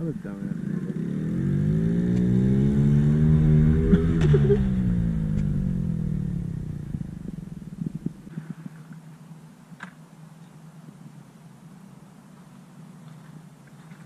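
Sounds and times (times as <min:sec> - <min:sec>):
small motorbike engine revving: 0:00.5 - 0:08.7.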